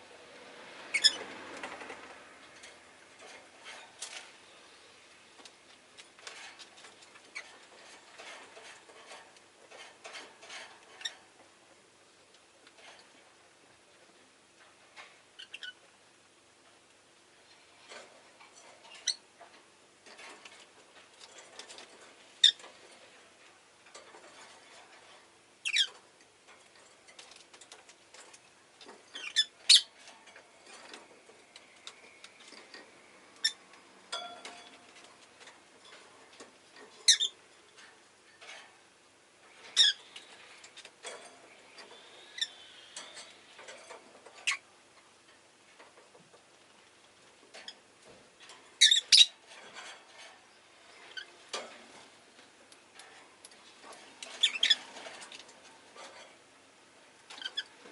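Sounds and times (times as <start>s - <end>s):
faint small clicks and rustling: 0.9s - 57.9s
lovebirds sharp high chirps: 48.8s - 49.3s, 54.4s - 54.8s.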